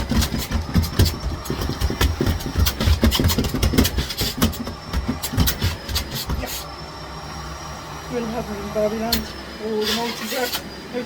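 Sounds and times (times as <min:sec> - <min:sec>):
knocks and thumps: 0:00.0 - 0:06.6
vacuum cleaner running: 0:00.0 - 0:11.0.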